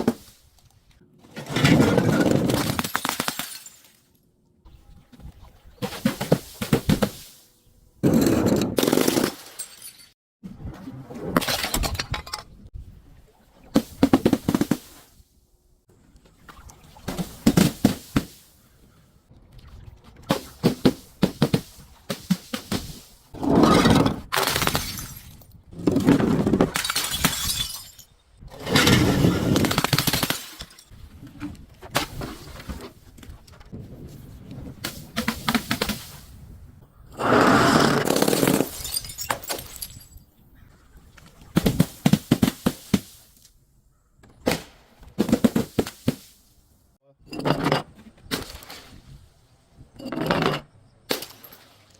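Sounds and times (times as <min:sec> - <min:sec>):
glass bottles crushing and breaking: 0:01.5 - 0:04.0, 0:08.0 - 0:10.2, 0:23.6 - 0:30.9, 0:38.0 - 0:40.3, 0:50.0 - 0:51.8.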